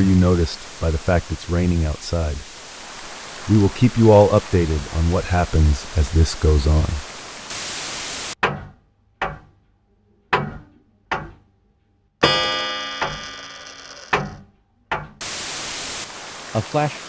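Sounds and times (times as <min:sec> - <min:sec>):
hiss-like static: 0:00.0 - 0:08.4, 0:15.2 - 0:17.0
sustained ringing chord: 0:12.2 - 0:14.1
sharp ringing percussive knocks: 0:12.2 - 0:16.1.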